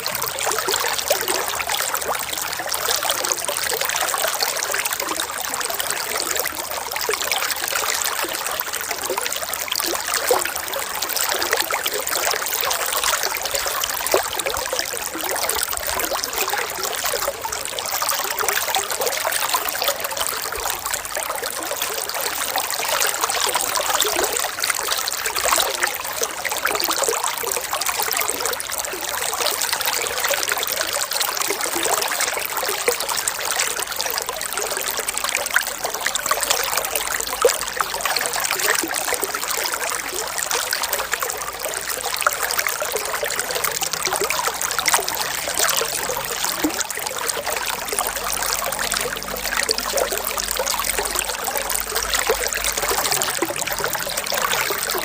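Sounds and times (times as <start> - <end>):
running water trickling: 0.0 - 55.0.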